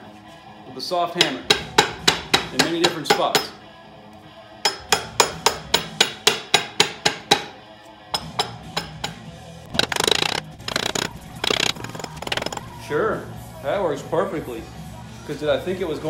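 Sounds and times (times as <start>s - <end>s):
hammer striking metal engine case: 4.7s - 7.6s, 8.2s - 12.7s.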